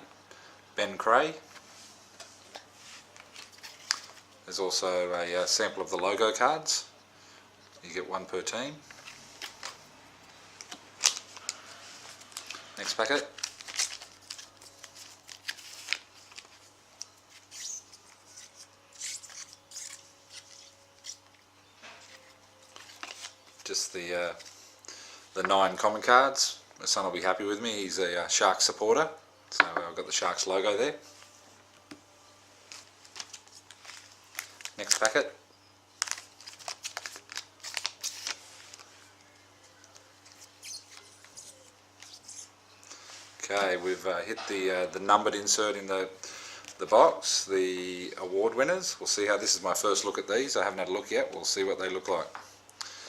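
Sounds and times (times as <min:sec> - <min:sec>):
card pack wrapper crinkling: 0:10.6 - 0:21.3, 0:22.0 - 0:24.5, 0:32.7 - 0:35.2, 0:36.0 - 0:38.9.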